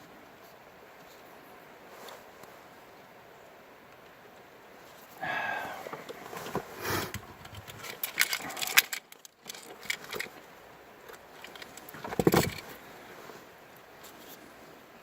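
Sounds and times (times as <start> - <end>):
handling rustle: 0.3 - 2.8, 4.8 - 15.0
fishing tackle clicking and rattling: 7.1 - 12.8.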